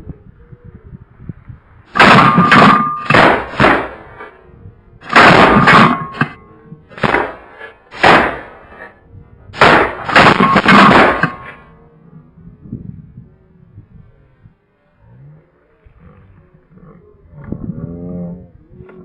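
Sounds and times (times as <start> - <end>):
shotgun blasts: 1.9 - 4.3, 5.0 - 8.8, 9.6 - 11.6.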